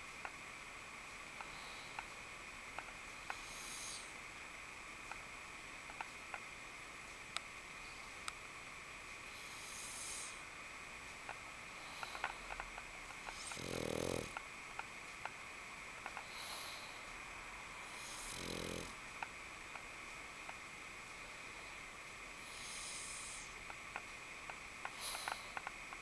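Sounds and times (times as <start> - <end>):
dog snoring with hissing breaths: 1.2 - 6.4, 9.2 - 10.7, 11.3 - 14.4, 16.0 - 19.2, 21.0 - 26.0.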